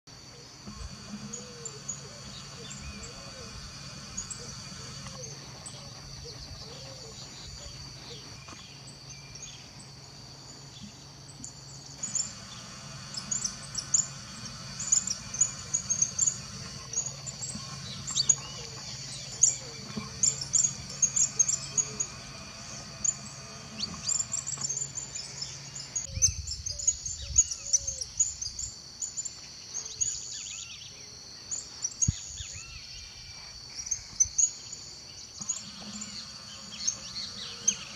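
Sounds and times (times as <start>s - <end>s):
high insect drone: 0.1s - 37.9s
low steady hum: 0.2s - 29.2s
birds chirping and calling: 0.6s - 9.9s, 10.7s - 30.9s, 31.5s - 37.9s.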